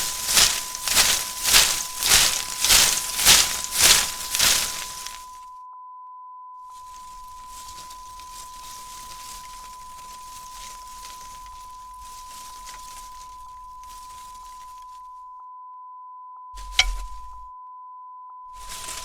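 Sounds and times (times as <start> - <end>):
paper streamers rustling: 0.0 - 5.4, 6.8 - 15.1, 18.6 - 19.0.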